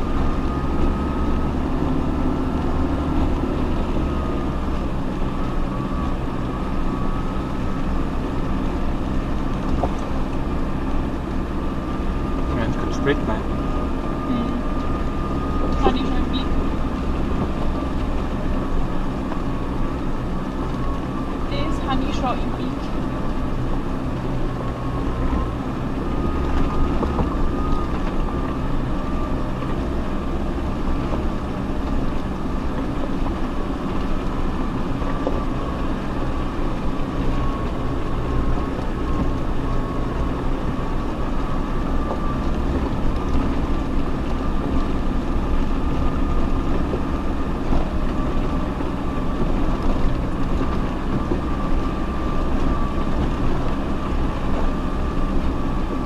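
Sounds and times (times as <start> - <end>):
off-road vehicle engine rumble: 0.0 - 56.0
thin steady whine: 9.1 - 17.2.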